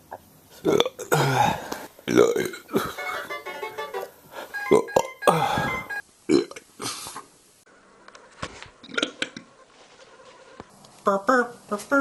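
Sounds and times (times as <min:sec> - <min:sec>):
person burping: 0:00.6 - 0:03.0, 0:04.8 - 0:07.0, 0:08.8 - 0:09.5.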